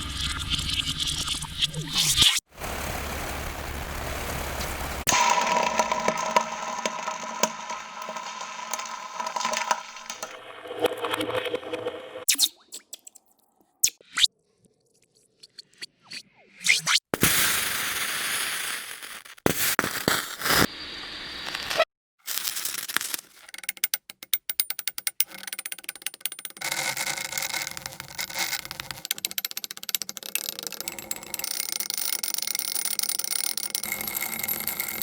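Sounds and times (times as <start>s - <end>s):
loud hissing sizzle: 2.5s - 5.1s
fast crackling clicks: 2.9s - 10.4s.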